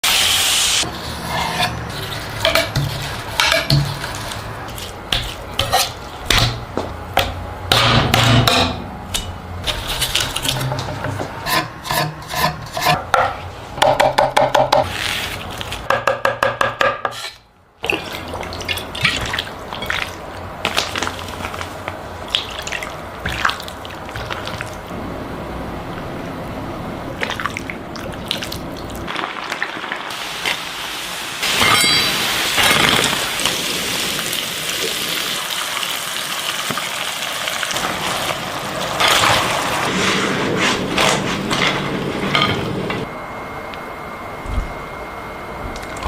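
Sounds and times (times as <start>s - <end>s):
utensils and dishes clinking: 1.2s - 6.6s, 7.2s - 13.4s, 31.4s - 33.2s, 41.0s - 43.1s.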